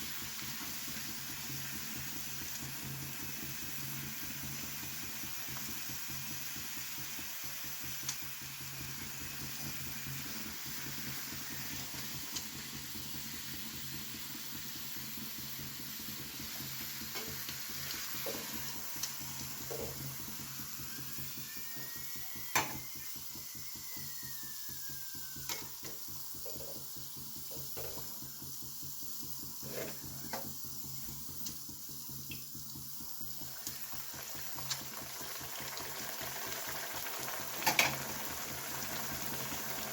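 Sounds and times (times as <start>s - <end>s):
food sizzling: 0.0s - 39.9s.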